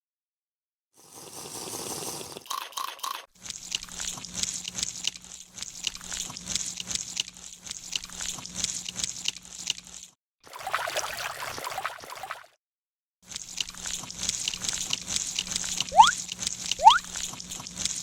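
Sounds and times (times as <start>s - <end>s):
crackling bubbling liquid: 3.4s - 10.0s, 13.3s - 18.0s
short tones: 16.8s - 17.0s.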